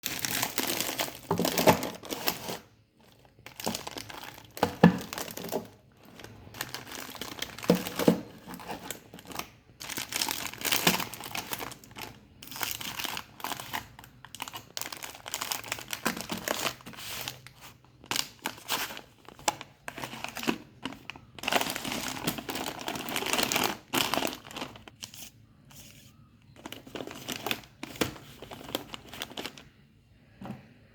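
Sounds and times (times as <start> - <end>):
packaging crinkling and rustling: 0.0 - 29.8
items thumping down: 6.6 - 8.9.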